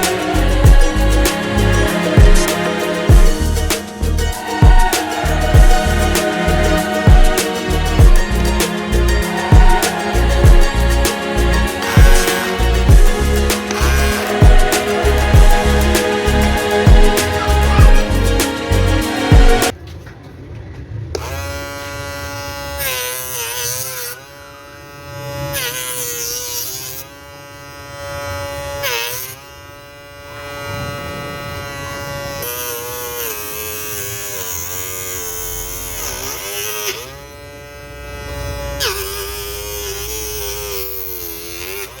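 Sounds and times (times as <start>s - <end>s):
saw blade cutting hiss: 0.0s - 19.7s, 21.6s - 42.0s
table saw motor whining: 21.2s - 42.0s.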